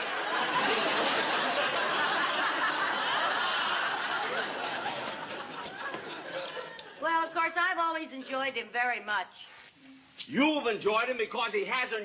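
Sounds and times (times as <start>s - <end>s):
audience laughing: 0.0s - 7.0s.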